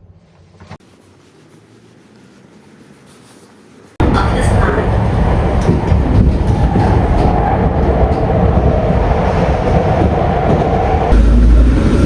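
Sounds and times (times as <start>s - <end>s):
vehicle rumble: 4.0s - 12.0s
steady whine: 11.1s - 12.0s.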